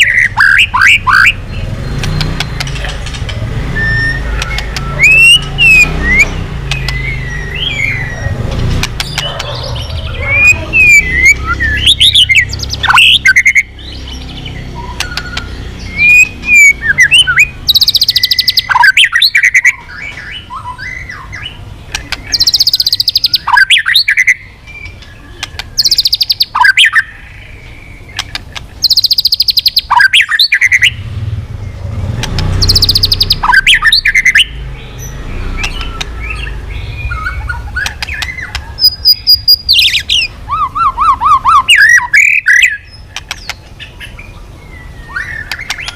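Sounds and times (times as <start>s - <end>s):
harsh rattling bird calls: 0.0s - 45.9s
bird singing whistled phrases: 3.7s - 8.4s, 10.1s - 21.6s, 22.3s - 27.2s, 28.8s - 31.0s, 32.6s - 43.0s, 44.0s - 45.9s.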